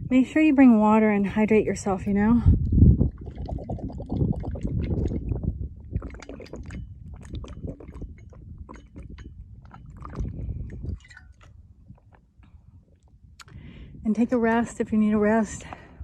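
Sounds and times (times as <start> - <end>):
person swallowing water: 2.5 - 13.6.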